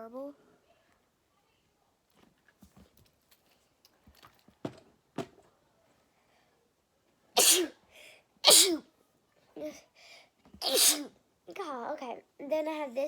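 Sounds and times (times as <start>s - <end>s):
child sneezing: 7.4s - 7.8s, 8.4s - 8.9s, 10.6s - 11.2s.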